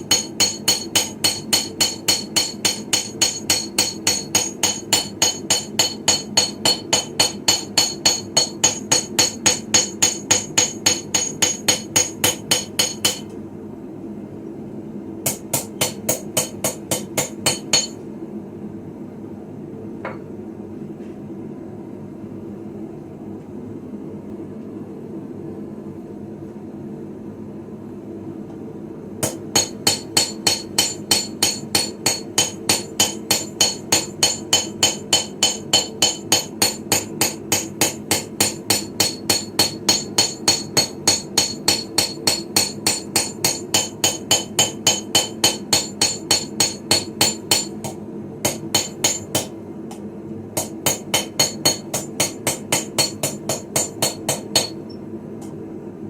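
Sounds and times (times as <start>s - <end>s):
hammer ringing on anvil: 0.0s - 13.3s, 15.3s - 18.0s, 29.2s - 49.5s, 50.6s - 54.9s
steady low hum: 0.0s - 56.0s.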